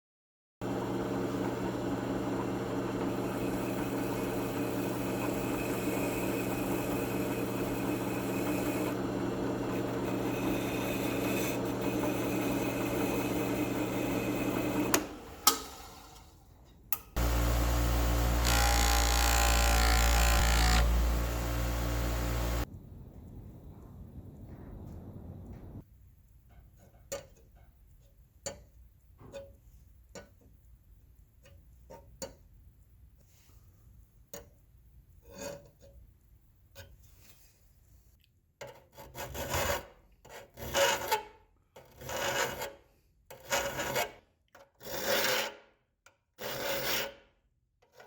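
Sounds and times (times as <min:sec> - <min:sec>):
power tool motor whining: 0:17.2 - 0:22.7
deep machine running: 0:17.2 - 0:25.8.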